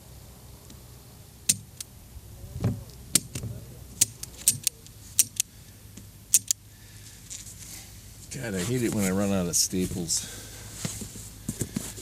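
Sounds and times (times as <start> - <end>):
staple gun snapping: 4.0 - 5.5, 6.3 - 6.6.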